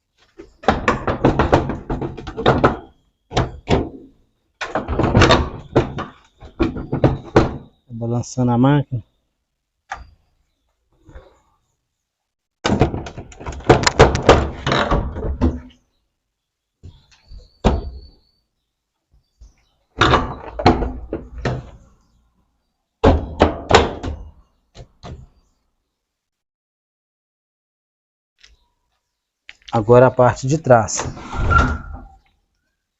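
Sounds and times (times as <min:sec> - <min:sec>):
hard plastic knocks and clunks: 0:00.6 - 0:07.8, 0:12.6 - 0:15.8, 0:20.0 - 0:21.8, 0:23.0 - 0:25.3.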